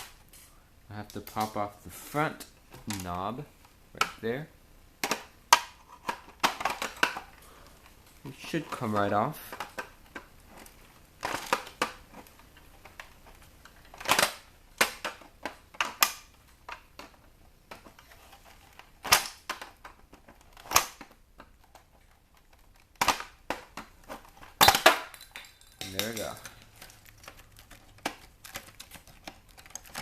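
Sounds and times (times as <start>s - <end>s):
sharp plastic clicks and knocks: 18.7s - 30.0s.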